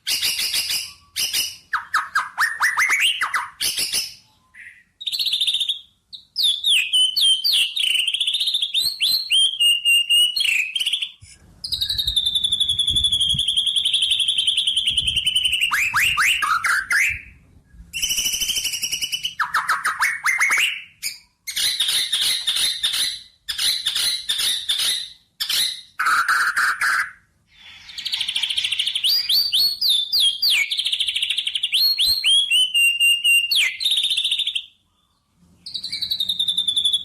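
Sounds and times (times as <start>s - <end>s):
songbird singing: 0.0s - 37.0s.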